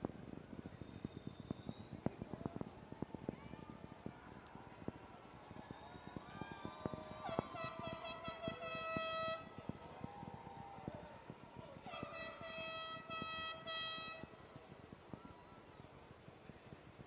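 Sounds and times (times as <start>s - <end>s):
horn blasts: 7.3s - 9.5s, 11.9s - 14.3s.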